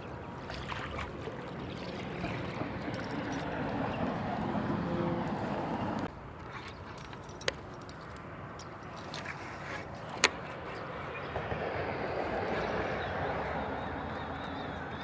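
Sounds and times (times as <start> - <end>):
gear clinking and rattling: 2.8 - 4.6, 6.7 - 10.2.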